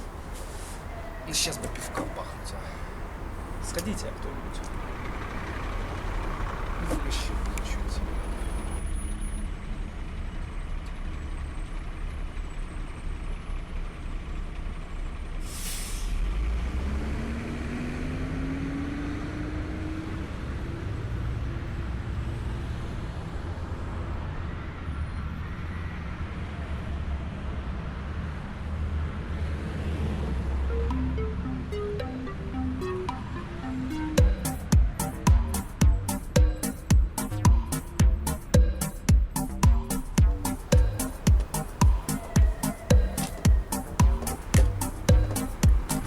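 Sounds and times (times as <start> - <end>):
air brake hiss: 0.0 - 1.2, 15.4 - 16.2
large vehicle engine rumbling: 0.0 - 24.7, 29.0 - 46.0.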